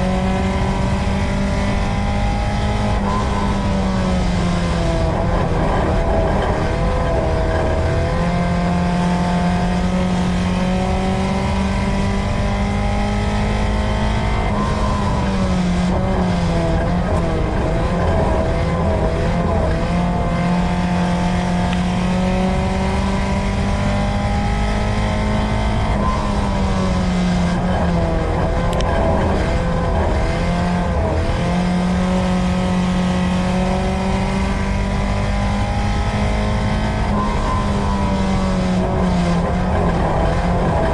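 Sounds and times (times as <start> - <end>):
race car engine running hard: 0.0 - 40.9.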